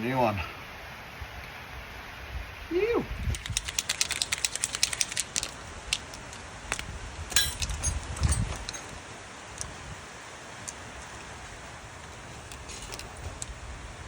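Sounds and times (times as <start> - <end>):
hand tools clicking: 3.4 - 6.4, 7.3 - 9.0.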